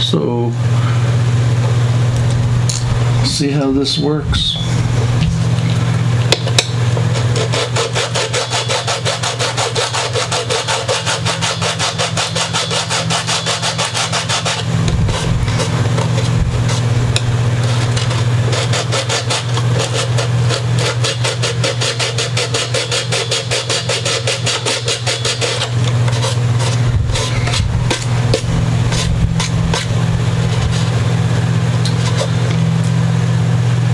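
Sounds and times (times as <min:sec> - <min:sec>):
constant low hum: 0:00.0 - 0:33.9
hand file rasping: 0:07.0 - 0:32.9.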